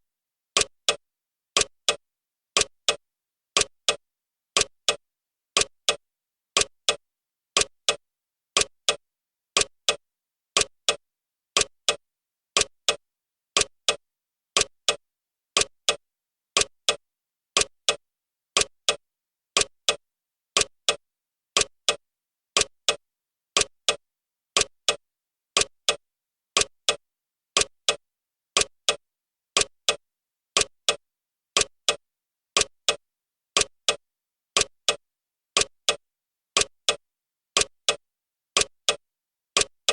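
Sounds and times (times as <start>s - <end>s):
clock ticking: 0.6s - 1.0s, 1.6s - 2.0s, 2.6s - 3.0s, 3.6s - 4.0s, 4.6s - 5.0s, 5.6s - 6.0s, 6.6s - 7.0s, 7.6s - 8.0s, 8.6s - 9.0s, 9.6s - 10.0s, 10.6s - 11.0s, 11.6s - 12.0s, 12.6s - 13.0s, 13.6s - 14.0s, 14.6s - 15.0s, 15.6s - 16.0s, 16.6s - 17.0s, 17.6s - 18.0s, 18.6s - 19.0s, 19.6s - 20.0s, 20.6s - 21.0s, 21.6s - 22.0s, 22.6s - 23.0s, 23.6s - 24.0s, 24.6s - 25.0s, 25.6s - 26.0s, 26.6s - 27.0s, 27.6s - 28.0s, 28.6s - 29.0s, 29.6s - 30.0s, 30.6s - 31.0s, 31.6s - 32.0s, 32.6s - 33.0s, 33.6s - 34.0s, 34.6s - 35.0s, 35.6s - 36.0s, 36.6s - 37.0s, 37.6s - 38.0s, 38.6s - 39.0s, 39.6s - 39.9s.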